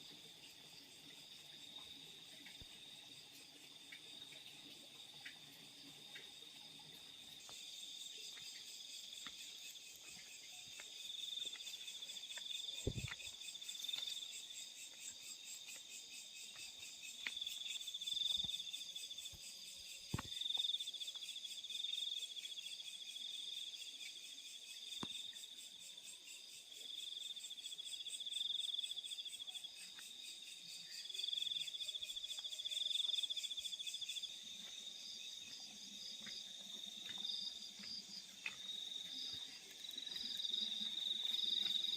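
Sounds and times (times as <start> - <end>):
crickets trilling: 0.0 - 41.9.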